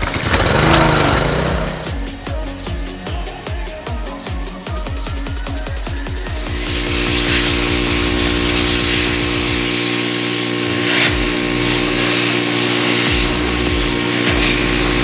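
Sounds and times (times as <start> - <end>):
pressure washer spraying water: 0.0 - 2.0, 6.2 - 15.0
electronic dance music: 0.0 - 15.0.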